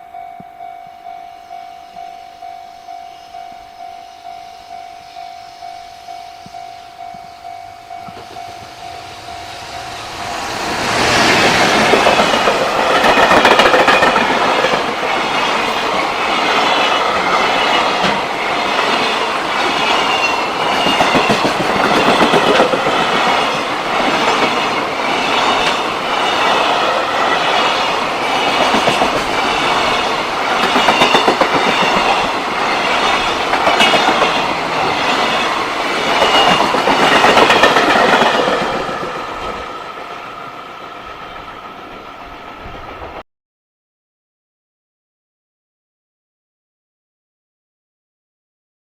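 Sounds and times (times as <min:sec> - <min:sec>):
level-crossing warning bell: 0:00.0 - 0:43.0
freight train passing: 0:00.0 - 0:43.2.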